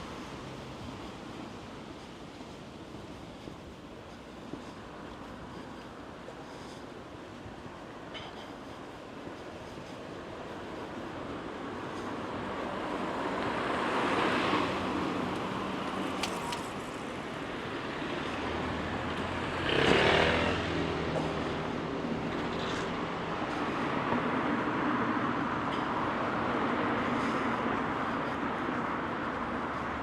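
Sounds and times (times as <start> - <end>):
traffic passing: 0.0 - 30.0
vehicle passing close: 18.0 - 23.1.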